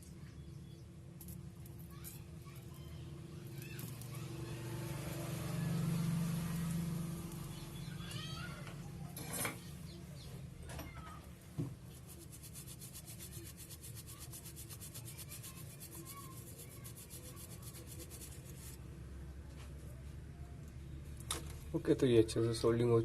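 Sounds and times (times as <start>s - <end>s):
faint rubbing and scraping: 11.2s - 18.8s
fast even rasping: 11.9s - 18.8s.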